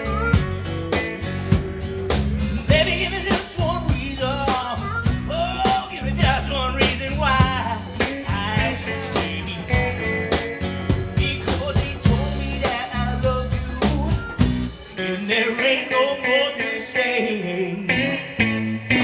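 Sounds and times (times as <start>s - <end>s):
drum strokes: 0.0s - 15.0s
bass line: 0.0s - 15.2s
bending lead guitar melody: 0.0s - 19.0s
guitars: 0.0s - 19.0s.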